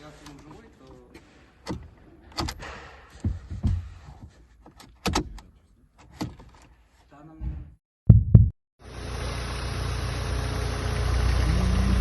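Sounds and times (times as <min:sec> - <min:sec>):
dull thumps: 0:07.4 - 0:08.6.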